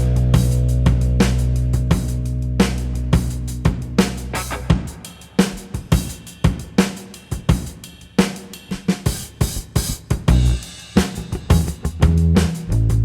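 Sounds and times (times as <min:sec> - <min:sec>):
held guitar and bass chords: 0:00.0 - 0:04.9, 0:11.5 - 0:13.0
rock drum kit beat: 0:00.0 - 0:13.0.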